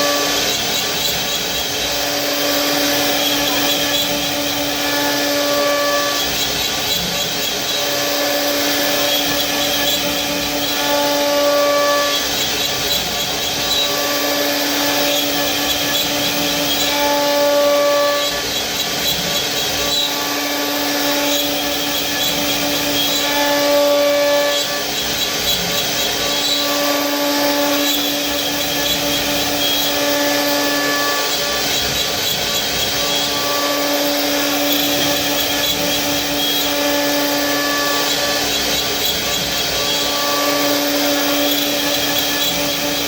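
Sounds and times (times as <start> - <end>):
cnc router spindle whine: 0.0 - 43.0.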